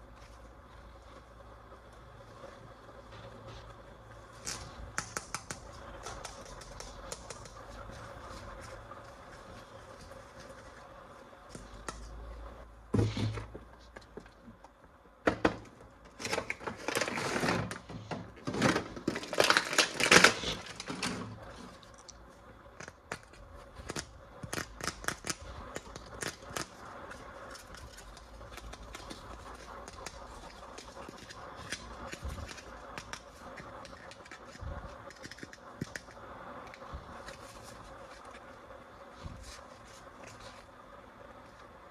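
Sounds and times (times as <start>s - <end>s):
plastic packaging crackling: 16.1s - 22.2s.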